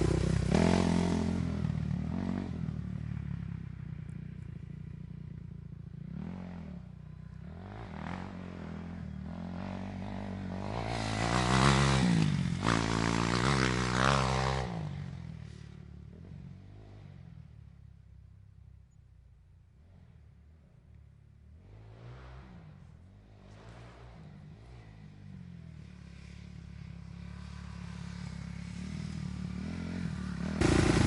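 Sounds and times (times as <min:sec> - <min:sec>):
dirt bike engine revving: 0:00.0 - 0:02.7, 0:07.6 - 0:14.8, 0:21.6 - 0:31.0.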